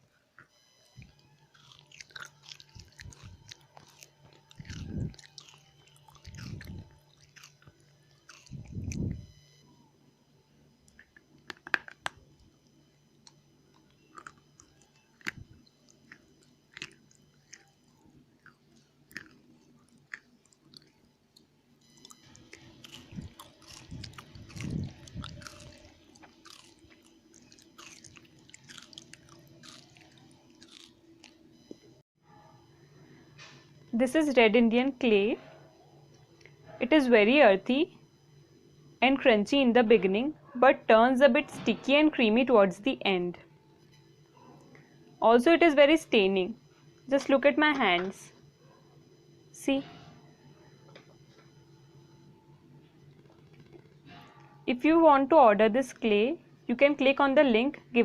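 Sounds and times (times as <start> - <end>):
faint steady hum: 0.0 - 58.0
chewing dry clay crunches: 0.2 - 9.2, 13.2 - 31.8.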